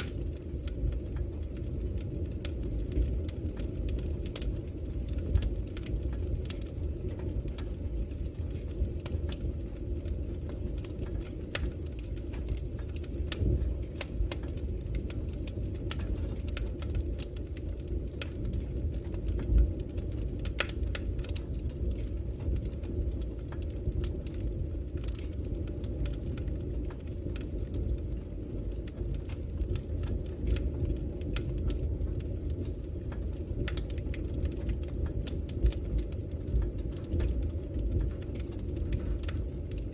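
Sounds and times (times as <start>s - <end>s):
campfire flames rushing: 0.0s - 39.9s
fire crackles and pops: 0.0s - 39.9s.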